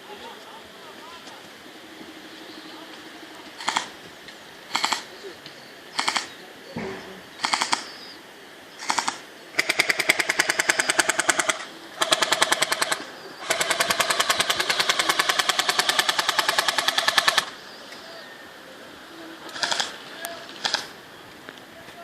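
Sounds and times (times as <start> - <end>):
airsoft gun firing bursts: 3.6 - 3.9, 4.7 - 5.1, 6.0 - 6.3, 7.4 - 7.9, 8.8 - 17.6, 19.6 - 20.0, 20.6 - 20.9.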